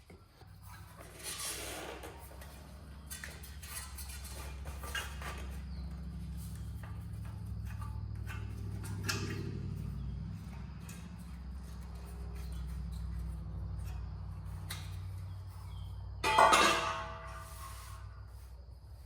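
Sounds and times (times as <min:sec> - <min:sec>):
steady low hum: 0:00.1 - 0:19.0.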